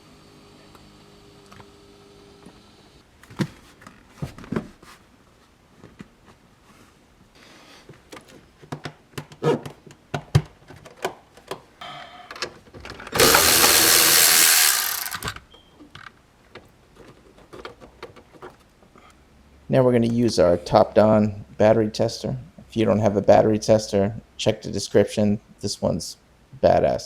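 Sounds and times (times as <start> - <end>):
hand tools clicking and rattling: 13.1 - 15.4.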